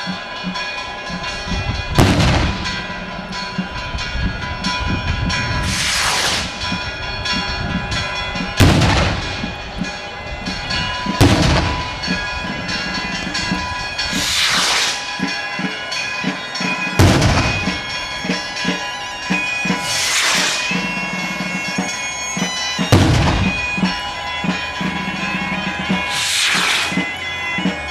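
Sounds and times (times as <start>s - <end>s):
music: 0.0s - 5.7s, 6.4s - 27.9s
rocket bangs echoing: 2.0s - 2.9s, 8.6s - 9.5s, 11.2s - 12.1s, 17.0s - 17.8s, 22.9s - 23.6s
rising rocket whoosh: 5.6s - 6.5s, 14.2s - 15.0s, 19.9s - 20.7s, 26.1s - 27.0s.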